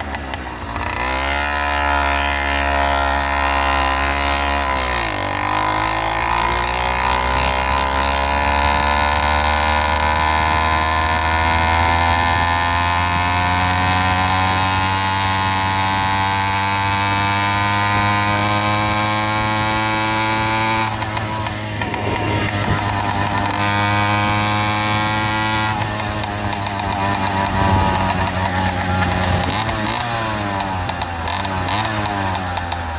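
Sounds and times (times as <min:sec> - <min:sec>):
motorized bike engine running: 0:00.0 - 0:32.9.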